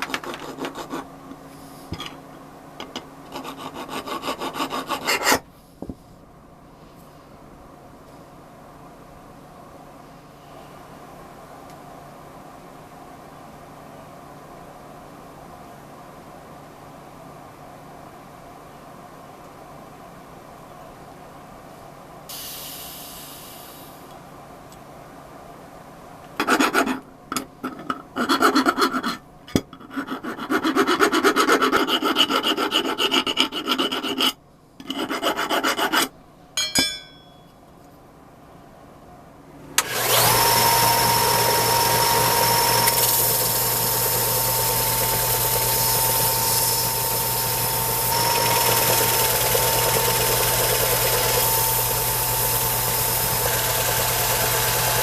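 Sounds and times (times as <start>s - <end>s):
hand sanding strokes: 3.4s - 5.4s
small power tool whine: 39.8s - 55.0s.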